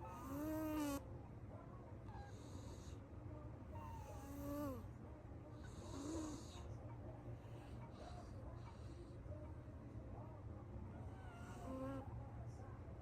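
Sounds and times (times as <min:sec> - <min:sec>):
cat snoring softly: 0:00.0 - 0:01.0, 0:03.8 - 0:04.8, 0:05.6 - 0:06.7.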